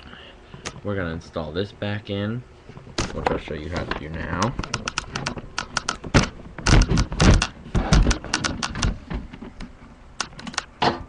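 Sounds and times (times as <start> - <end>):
dull thumps: 2.7 - 11.0
plastic and metal clacks: 3.0 - 11.0
scattered clicks: 4.3 - 9.0, 9.6 - 10.7.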